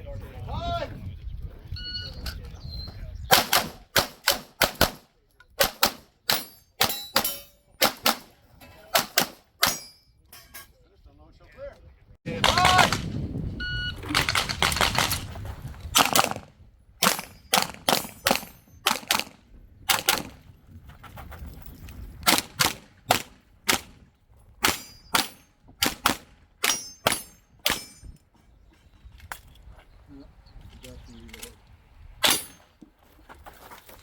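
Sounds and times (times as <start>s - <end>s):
pistol shots: 3.3s - 5.0s, 16.0s - 20.4s, 22.2s - 24.0s, 24.6s - 27.9s.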